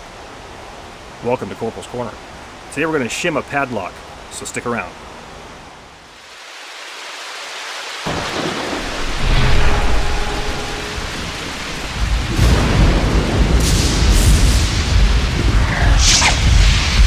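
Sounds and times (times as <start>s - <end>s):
rain hiss: 0.0s - 17.0s
deep rumble of thunder: 8.1s - 17.0s.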